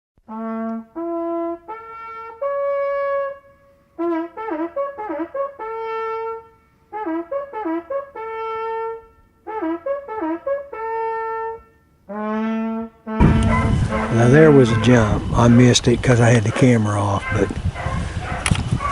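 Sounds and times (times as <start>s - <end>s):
beagles baying: 13.2s - 18.9s.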